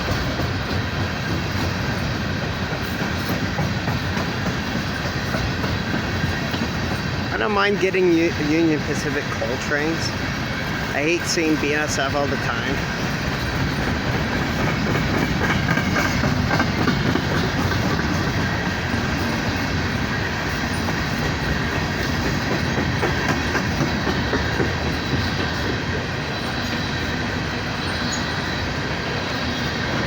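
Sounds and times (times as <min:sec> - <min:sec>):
train wheels rumbling on rails: 0:00.0 - 0:30.0.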